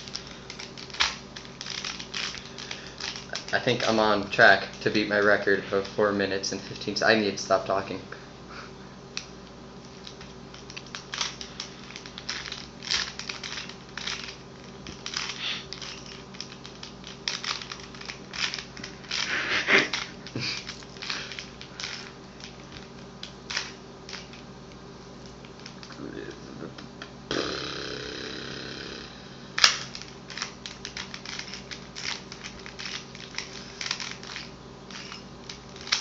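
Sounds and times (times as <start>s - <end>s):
puzzle cube plastic clicks: 0.0s - 3.9s, 9.9s - 22.9s, 29.6s - 36.0s
faint steady hum: 0.0s - 36.0s.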